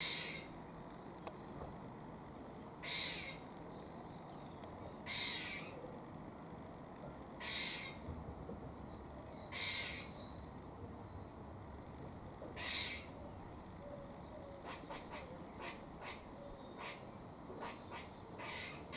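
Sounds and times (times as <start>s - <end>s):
squirrel harsh warning calls: 0.0s - 0.6s, 2.8s - 3.5s, 5.0s - 5.8s, 7.4s - 8.0s, 9.5s - 10.2s, 12.6s - 13.2s, 14.4s - 18.9s.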